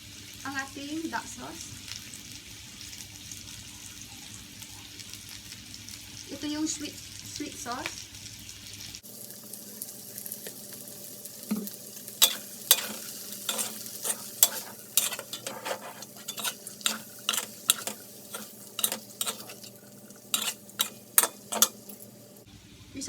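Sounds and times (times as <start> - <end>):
food sizzling in a pan: 0.0 - 23.0
utensil scraping a pan: 12.2 - 22.2.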